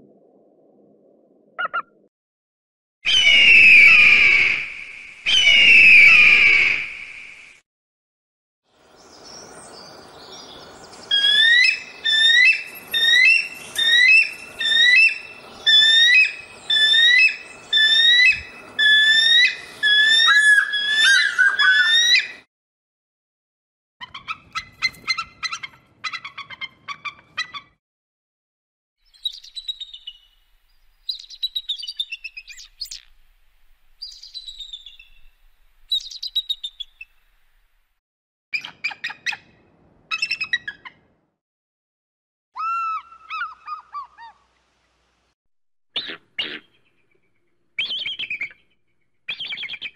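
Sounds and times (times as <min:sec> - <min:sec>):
eagle calls: 0:01.6 - 0:02.0.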